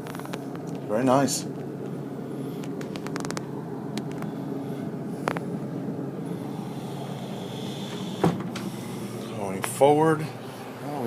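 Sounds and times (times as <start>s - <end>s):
low hum of machinery: 0.0s - 11.0s.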